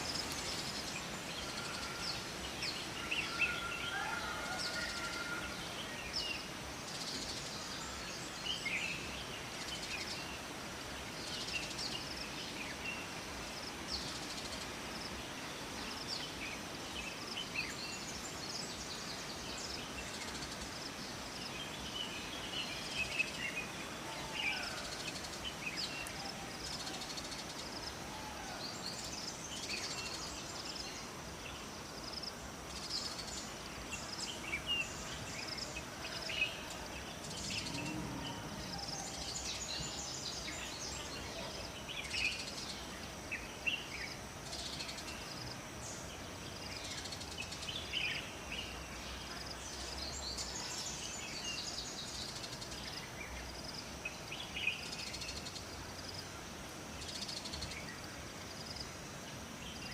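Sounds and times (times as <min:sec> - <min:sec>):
flowing water rushing: 0:00.0 - 0:29.5.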